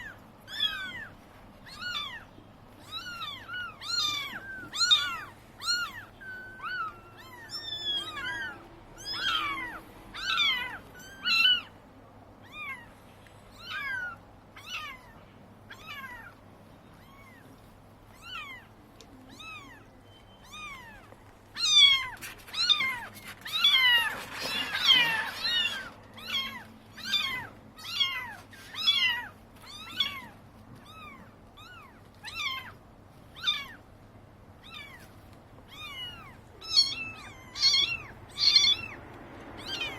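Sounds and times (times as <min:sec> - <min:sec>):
seagulls calling: 0:21.6 - 0:28.2, 0:35.7 - 0:39.9.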